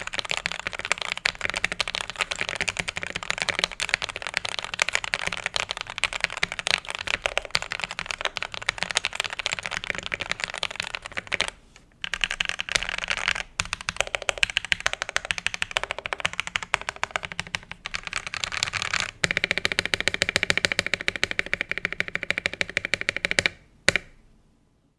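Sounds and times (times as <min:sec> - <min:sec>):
mechanical keyboard typing: 0:00.0 - 0:24.1.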